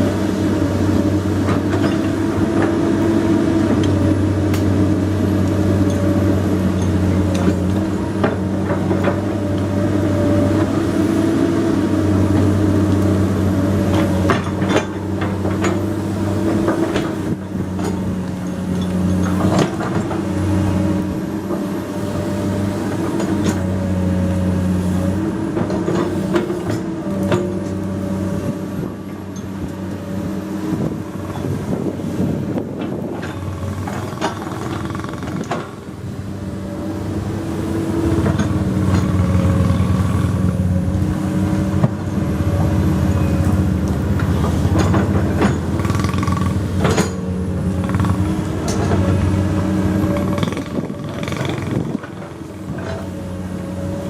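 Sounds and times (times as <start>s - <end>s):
excavator diesel engine running: 0.0s - 54.0s
machine knocks and clanks: 32.7s - 35.8s, 44.2s - 49.2s, 50.0s - 53.1s.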